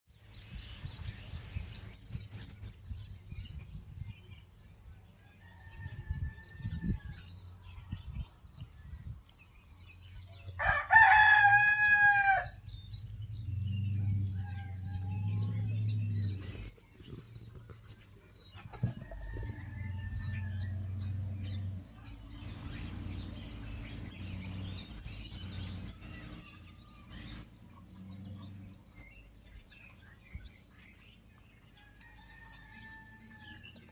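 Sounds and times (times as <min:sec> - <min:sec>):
small birds chirping: 0:00.1 - 0:33.9
rooster crowing: 0:10.6 - 0:12.6, 0:14.0 - 0:15.9, 0:18.8 - 0:21.3, 0:31.8 - 0:33.9
low rumble: 0:11.3 - 0:32.1.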